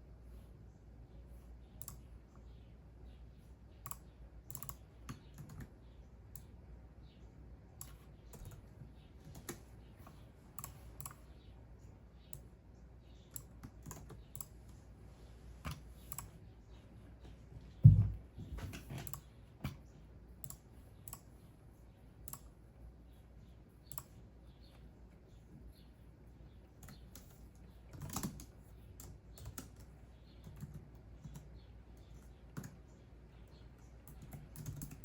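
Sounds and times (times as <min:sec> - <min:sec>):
faint low hum: 0:00.0 - 0:35.0
loud dull thump: 0:17.8 - 0:18.2.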